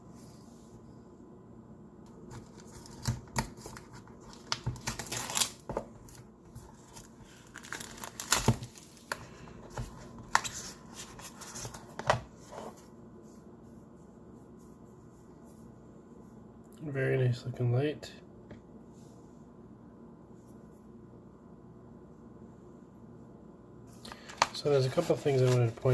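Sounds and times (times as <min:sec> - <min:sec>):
packaging rustling: 0:02.3 - 0:12.0.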